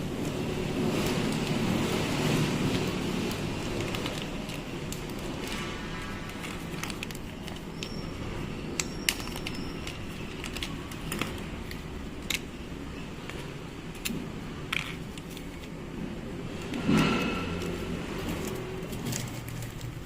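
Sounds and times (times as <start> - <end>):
small metal parts and tools clicking: 6.3 - 15.8.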